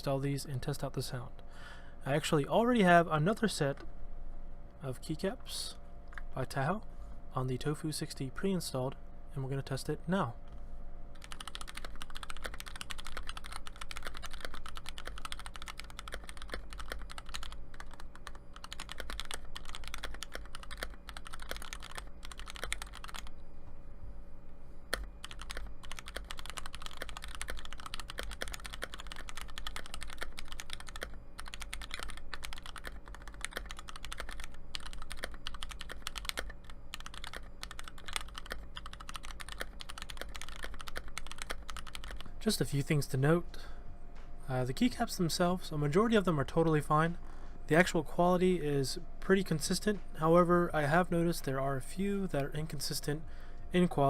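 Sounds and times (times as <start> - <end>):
mechanical keyboard typing: 11.2 - 23.3, 24.9 - 42.3.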